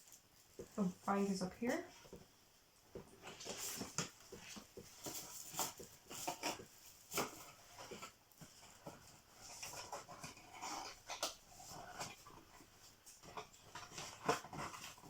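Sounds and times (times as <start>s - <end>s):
cardboard packaging rustling: 3.0s - 15.0s.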